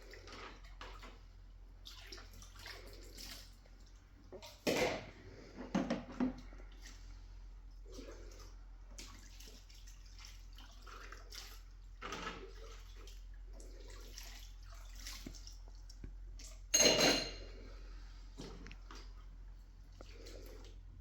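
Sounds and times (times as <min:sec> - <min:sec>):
water splashing and dripping: 0:01.8 - 0:04.6, 0:07.8 - 0:16.7.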